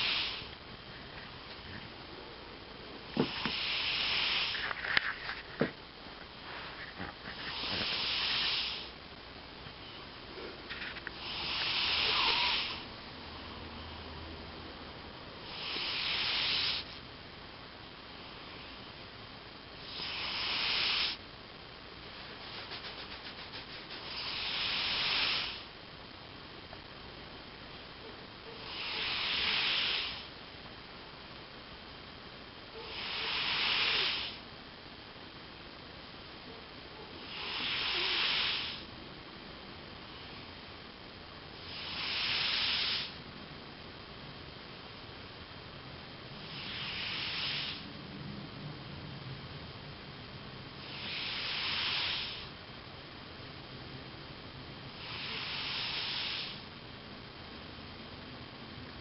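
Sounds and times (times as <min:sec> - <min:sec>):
cat snoring: 0:00.0 - 0:00.5, 0:03.1 - 0:04.6, 0:06.9 - 0:08.9, 0:11.1 - 0:12.8, 0:15.4 - 0:17.0, 0:19.8 - 0:21.2, 0:23.9 - 0:25.7, 0:28.6 - 0:30.3, 0:32.7 - 0:34.4, 0:37.1 - 0:38.9, 0:41.6 - 0:43.2, 0:46.4 - 0:47.8, 0:50.8 - 0:52.5, 0:54.9 - 0:56.6
small clicks and snuffles: 0:03.2 - 0:08.9, 0:10.4 - 0:12.6, 0:22.4 - 0:24.4.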